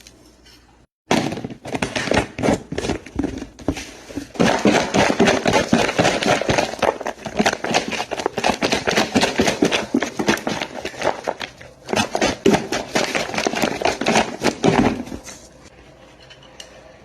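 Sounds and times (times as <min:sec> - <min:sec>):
cucumber rattling in shaken container: 0:04.3 - 0:15.2.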